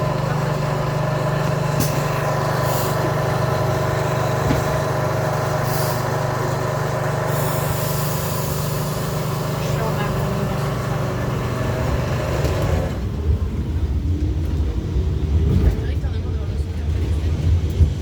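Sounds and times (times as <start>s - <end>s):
vehicle engine humming: 0.0s - 17.8s
short hissing: 5.6s - 6.2s, 7.3s - 9.1s.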